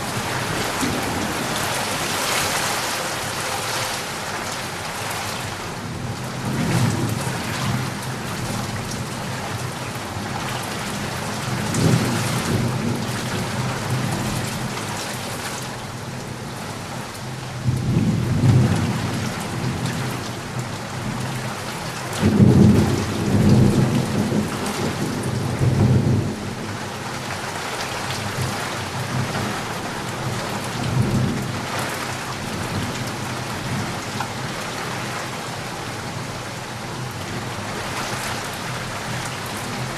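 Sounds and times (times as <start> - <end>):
thunder rumbling: 0.0 - 5.2
heavy rain: 0.0 - 39.9.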